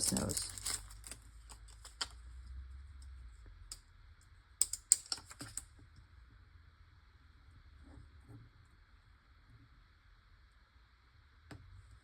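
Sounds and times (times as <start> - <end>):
plastic pieces clicking: 0.0 - 2.2, 4.6 - 5.6.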